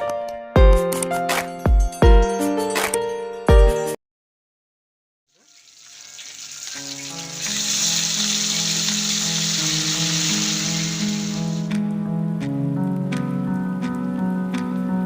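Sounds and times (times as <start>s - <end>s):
background music: 0.0s - 4.0s, 6.4s - 15.0s
chicken frying in hot oil: 5.3s - 11.7s.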